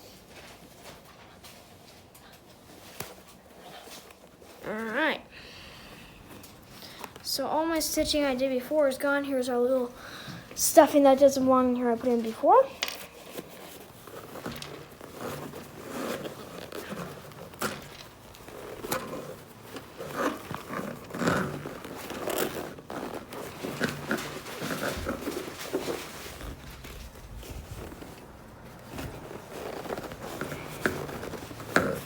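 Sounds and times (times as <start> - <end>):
cloth doll rustling: 10.7 - 32.0.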